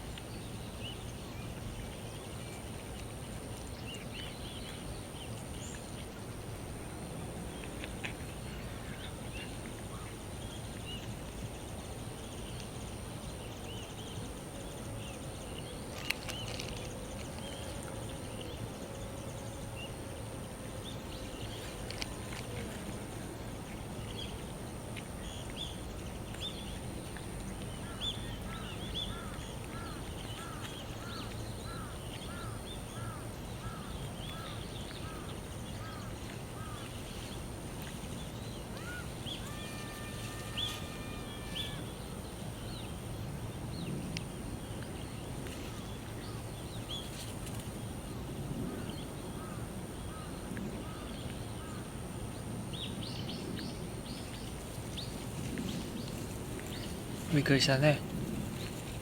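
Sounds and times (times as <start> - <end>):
steady low hum: 0.0 - 59.0
birds chirping: 20.8 - 43.0, 52.7 - 58.1.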